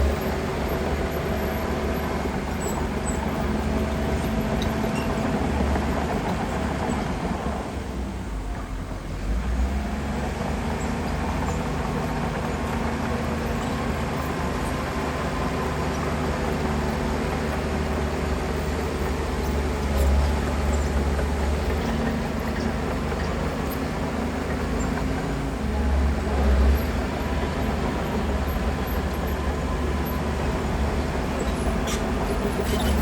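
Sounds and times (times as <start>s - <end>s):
heavy diesel engine running: 0.0s - 33.0s.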